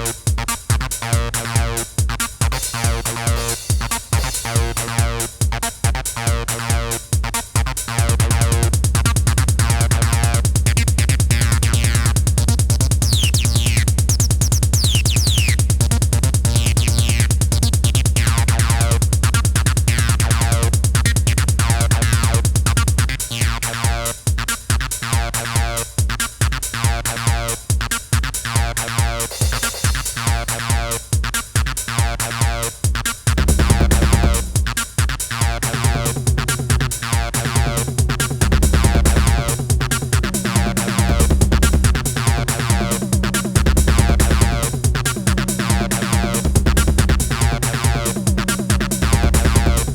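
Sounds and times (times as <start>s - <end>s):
drum machine beat: 0.0s - 49.9s
rapidly repeating synth pattern: 0.0s - 49.9s
steady low drone: 33.5s - 34.7s, 35.6s - 49.9s.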